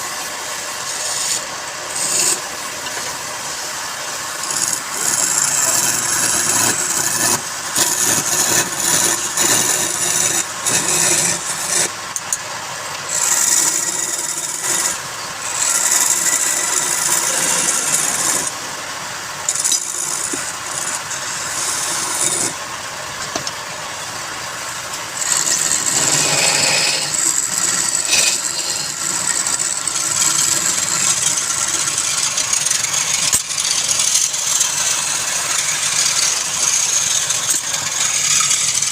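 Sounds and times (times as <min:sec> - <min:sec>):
tool scraping spinning wood: 0:00.0 - 0:12.4, 0:13.0 - 0:22.7, 0:25.0 - 0:38.9
lathe humming: 0:00.0 - 0:23.1, 0:23.9 - 0:38.9.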